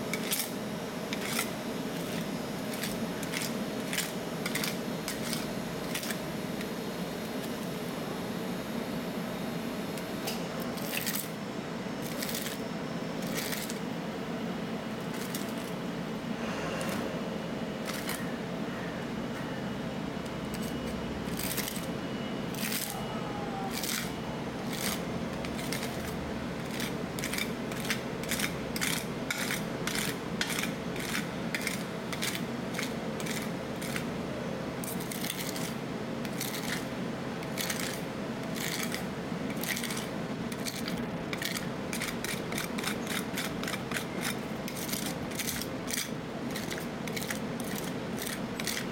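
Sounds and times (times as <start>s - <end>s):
machine humming: 0.0s - 48.9s
metal spatulas scraping steel plate: 24.7s - 34.0s, 34.8s - 36.9s, 37.5s - 48.9s.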